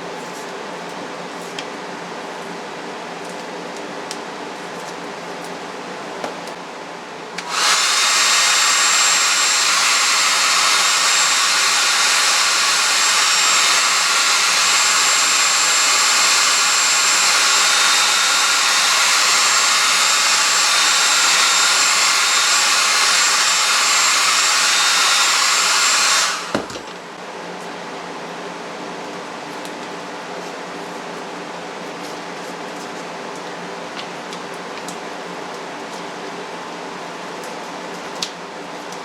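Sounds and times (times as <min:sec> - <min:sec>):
hair dryer blowing: 0:07.4 - 0:27.0.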